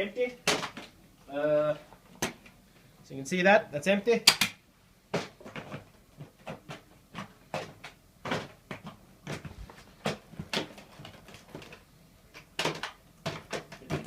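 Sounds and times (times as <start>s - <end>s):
plastic clicks and knocks: 5.2s - 14.0s.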